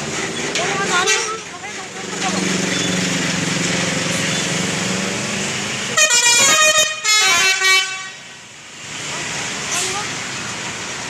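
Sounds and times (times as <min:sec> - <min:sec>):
bus engine running: 0:00.0 - 0:11.0
musical air horn: 0:06.0 - 0:08.2.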